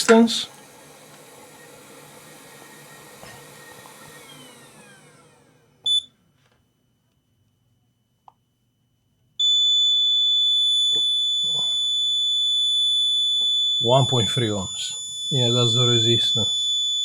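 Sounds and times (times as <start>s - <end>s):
hot-air station airflow: 0.0s - 6.6s, 13.8s - 16.6s
short high multimeter beep: 5.9s - 6.1s, 9.4s - 17.0s
continuity beeper steady tone: 9.4s - 17.0s.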